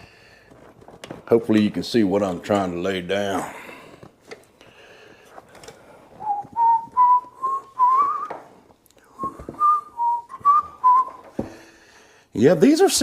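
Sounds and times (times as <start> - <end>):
man whistling a slow tune: 6.2 - 8.4, 9.1 - 11.2.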